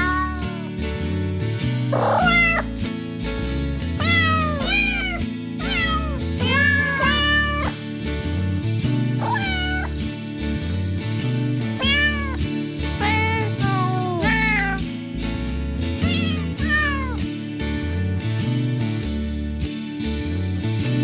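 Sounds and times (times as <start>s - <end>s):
cat meowing: 0.0s - 0.8s, 2.0s - 2.8s, 4.0s - 7.8s, 9.2s - 10.0s, 11.8s - 12.4s, 13.0s - 14.8s, 16.0s - 17.2s
rough cat sound: 0.0s - 0.8s, 1.9s - 2.9s, 4.0s - 7.8s, 9.2s - 10.0s, 11.8s - 14.9s, 16.0s - 17.2s.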